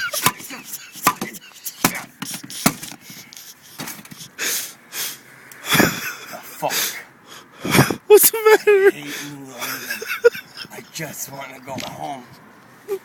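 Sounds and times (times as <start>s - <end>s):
sharp knocks on a tire: 0.2s - 3.0s.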